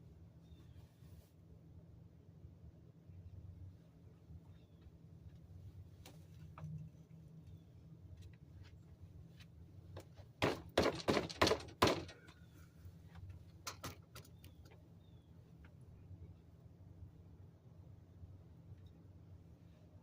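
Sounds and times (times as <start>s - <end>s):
heavy knocks: 10.4s - 12.2s.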